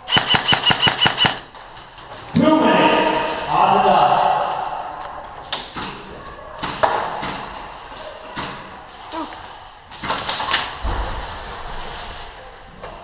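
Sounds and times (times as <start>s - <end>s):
airsoft gun shots: 0.0s - 1.5s.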